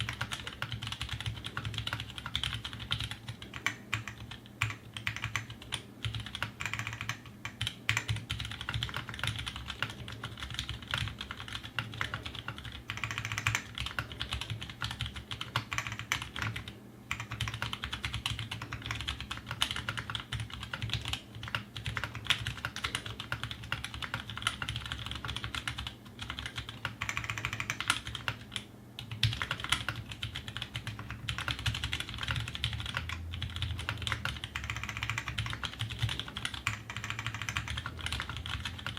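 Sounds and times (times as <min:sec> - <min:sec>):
fast typing on mechanical keyboard: 0:00.0 - 0:38.9.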